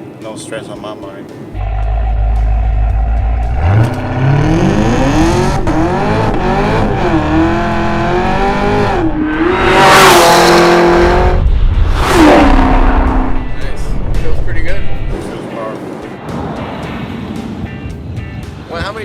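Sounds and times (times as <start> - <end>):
car engine accelerating hard: 1.6 - 13.5.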